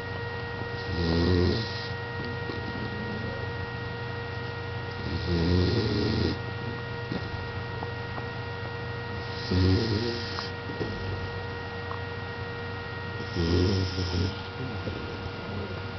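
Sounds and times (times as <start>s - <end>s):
steady electrical hum: 0.0s - 15.9s
pet snoring: 0.8s - 2.0s, 4.9s - 6.4s, 9.2s - 11.1s, 13.2s - 14.4s.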